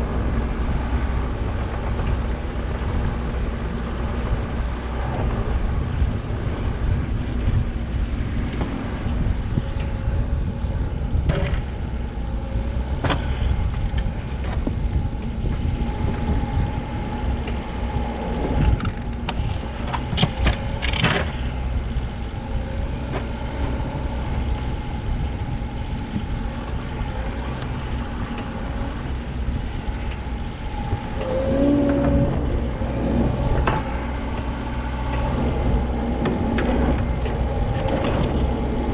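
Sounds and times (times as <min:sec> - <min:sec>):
backhoe engine running: 0:00.0 - 0:38.9
high whine: 0:21.4 - 0:38.9.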